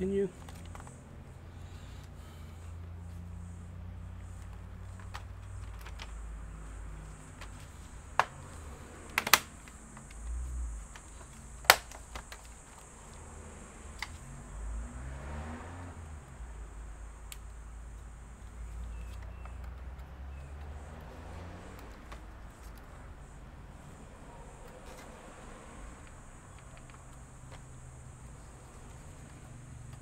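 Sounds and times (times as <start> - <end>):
laptop parts clicking and tapping: 0.4 - 1.0, 4.1 - 13.2, 13.9 - 14.3, 17.2 - 22.9, 26.0 - 30.0.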